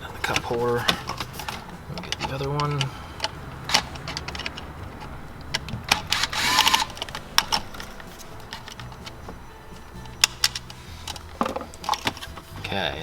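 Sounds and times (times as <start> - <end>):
rattling burst: 0.0 - 12.9.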